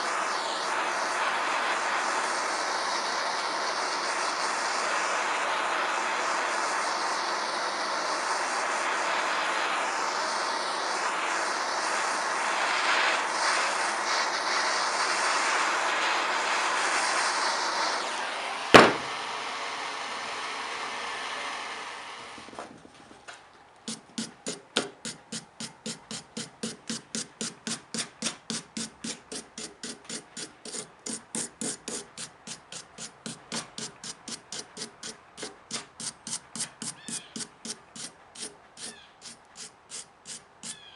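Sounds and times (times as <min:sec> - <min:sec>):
forge burner roaring: 0:00.0 - 0:40.9
hammer blows on hot steel: 0:15.7 - 0:19.7, 0:23.9 - 0:40.8
loud metal clang: 0:18.8 - 0:19.1.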